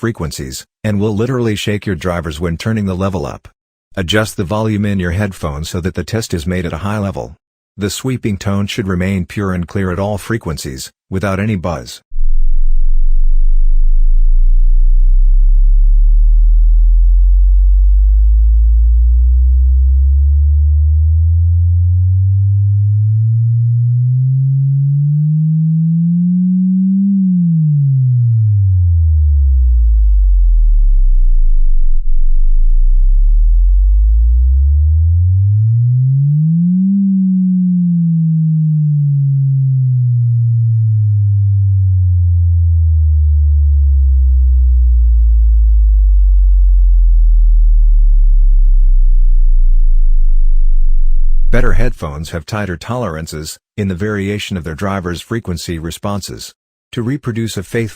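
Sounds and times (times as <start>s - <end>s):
sine-wave bass sweep: 12.1s - 52.1s.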